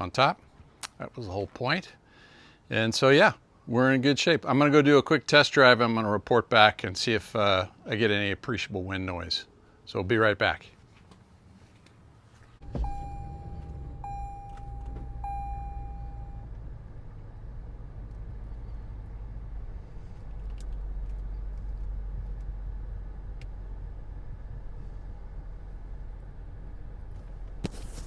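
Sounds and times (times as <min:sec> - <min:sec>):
car engine rumble: 0:12.0 - 0:28.0
car warning chime: 0:12.6 - 0:16.5.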